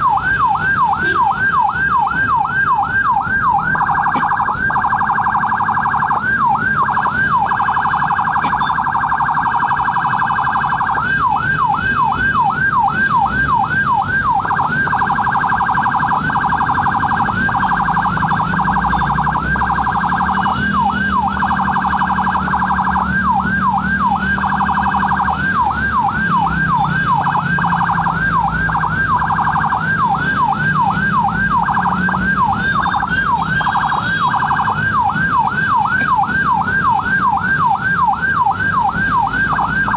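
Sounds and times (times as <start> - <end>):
ambulance siren yelp and warble: 0.0 - 39.9.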